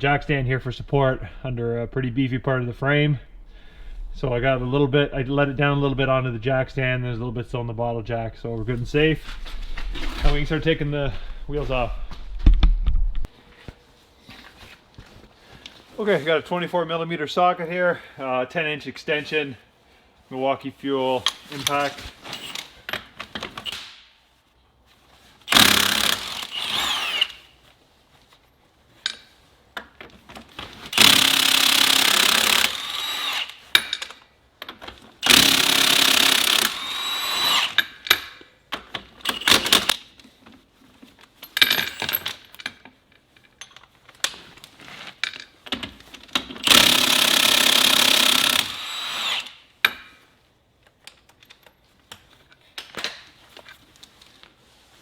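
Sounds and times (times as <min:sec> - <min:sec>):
impact wrench hammering: 0:25.5 - 0:27.3, 0:31.0 - 0:33.9, 0:46.6 - 0:50.1.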